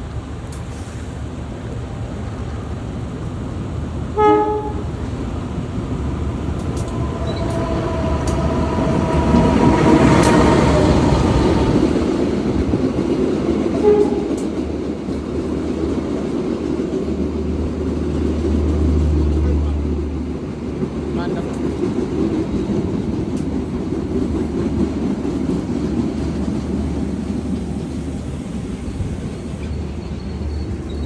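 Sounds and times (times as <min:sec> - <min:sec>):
train rumble: 0:00.0 - 0:31.0
train horn toots: 0:04.2 - 0:04.9, 0:07.0 - 0:10.9, 0:13.8 - 0:14.5.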